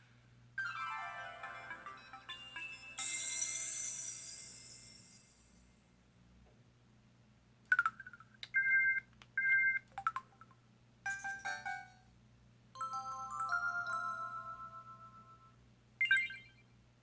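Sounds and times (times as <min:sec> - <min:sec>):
phone electronic blips: 0:16.0 - 0:16.7.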